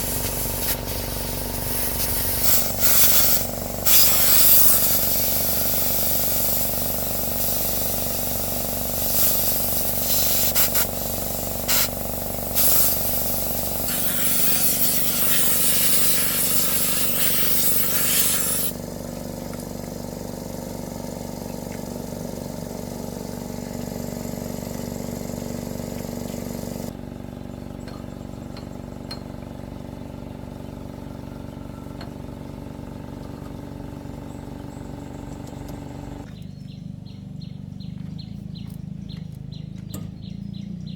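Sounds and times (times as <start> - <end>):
hissing noise: 0.0 - 18.8
machinery humming: 0.0 - 39.0.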